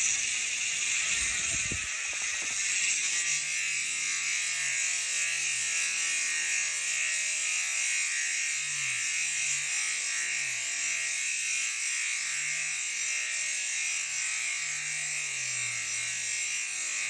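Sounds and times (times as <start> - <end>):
freewheel ratchet buzz: 0.0 - 3.8.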